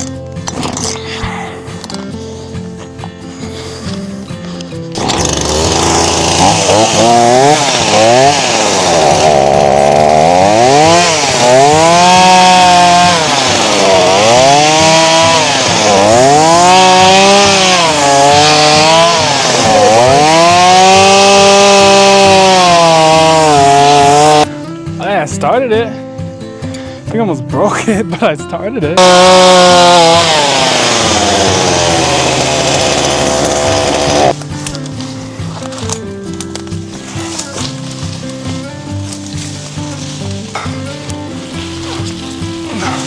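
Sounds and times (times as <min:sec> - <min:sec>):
chainsaw engine revving: 0:04.9 - 0:24.5, 0:29.0 - 0:34.4.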